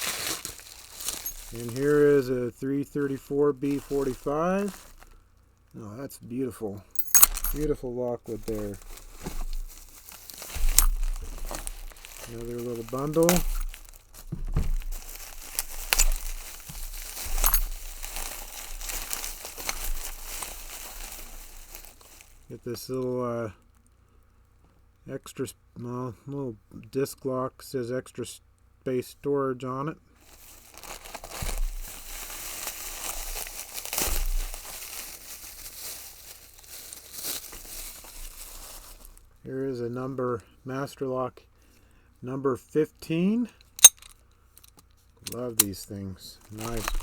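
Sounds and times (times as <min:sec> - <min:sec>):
wrapping crinkling and snapping: 0:00.0 - 0:02.4, 0:03.6 - 0:05.8, 0:07.0 - 0:22.5, 0:30.2 - 0:39.3, 0:46.4 - 0:47.0.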